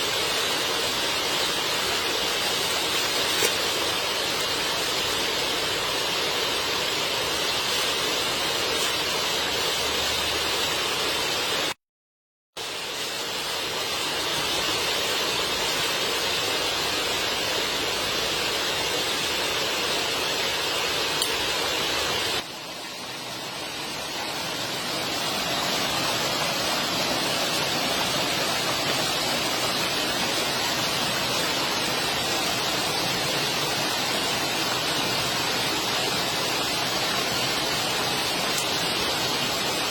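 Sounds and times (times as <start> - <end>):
rushing water: 0.0 - 11.8, 12.6 - 39.9.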